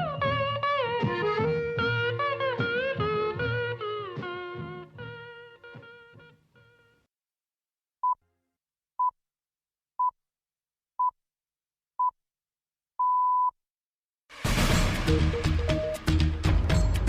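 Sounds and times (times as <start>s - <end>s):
guitar tune: 0.0s - 7.0s, 14.5s - 17.0s.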